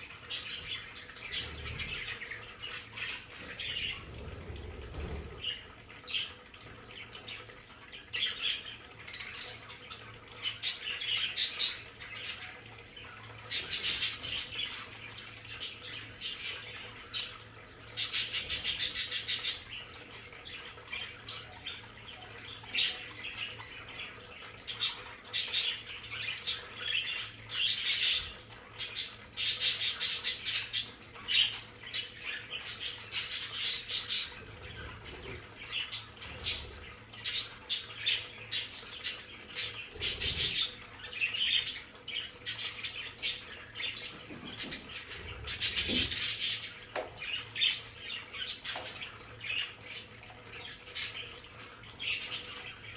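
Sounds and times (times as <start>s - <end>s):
budgerigars chirping and squawking: 0.2s - 52.9s.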